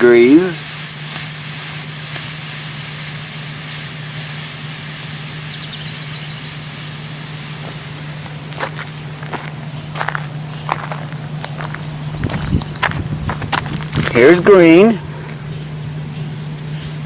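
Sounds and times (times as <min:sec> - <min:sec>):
smoke firework hissing: 0:00.0 - 0:11.8
steady low hum: 0:00.0 - 0:17.0.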